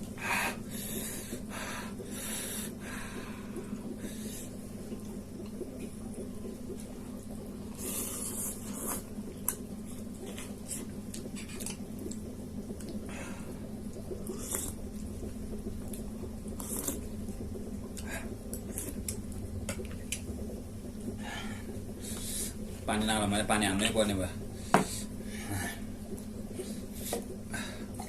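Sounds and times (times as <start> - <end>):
wet chewing and slurping: 7.7 - 13.0, 14.2 - 15.2, 15.8 - 17.1, 17.9 - 20.2.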